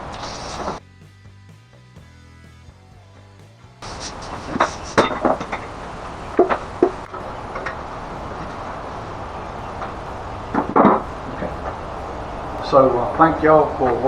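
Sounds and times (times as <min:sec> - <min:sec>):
steady hum: 0:00.0 - 0:00.8, 0:03.8 - 0:14.0.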